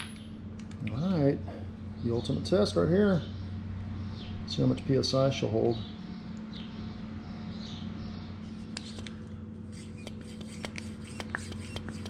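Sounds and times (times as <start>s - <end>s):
hand pump clicking and rubbing: 8.7s - 12.0s.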